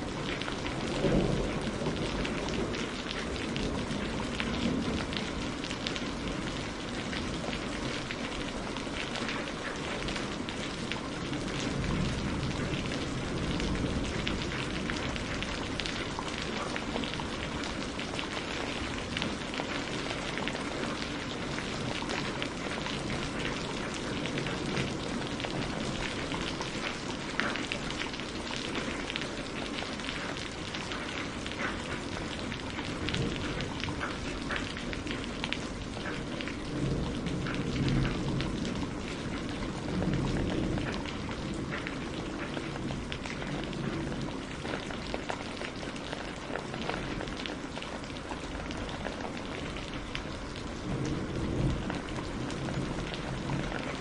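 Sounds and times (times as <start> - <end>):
raindrops pattering: 0.0 - 54.0.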